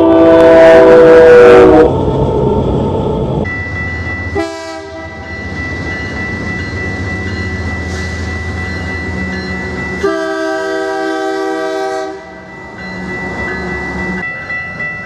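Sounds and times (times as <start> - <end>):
train horn blast: 0.0 - 1.9, 4.4 - 5.2, 10.0 - 12.4
passing train rumble: 0.0 - 15.0.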